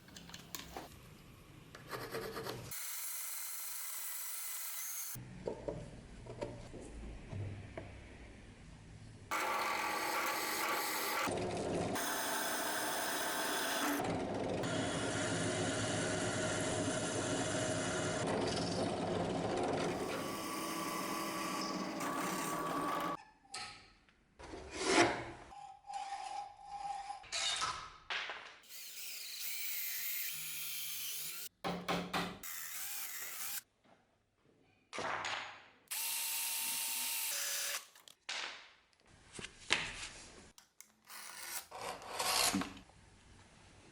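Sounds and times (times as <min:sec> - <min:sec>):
electric power tool running: 0:12.0 - 0:23.2.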